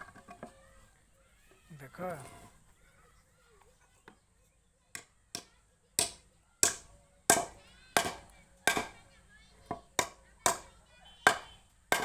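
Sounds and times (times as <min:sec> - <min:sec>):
hammer striking wood: 0:05.0 - 0:09.0, 0:09.7 - 0:12.0.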